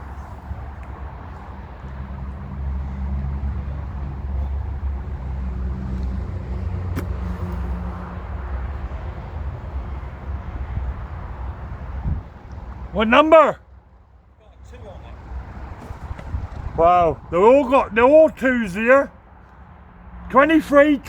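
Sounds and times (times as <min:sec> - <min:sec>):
engine running with low hum: 0:00.0 - 0:12.9.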